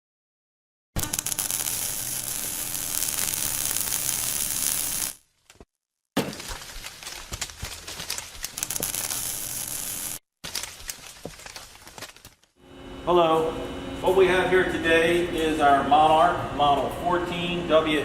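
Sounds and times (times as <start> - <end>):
crackling and clinking: 1.0 - 5.2, 6.3 - 12.6
lathe humming: 8.6 - 10.2.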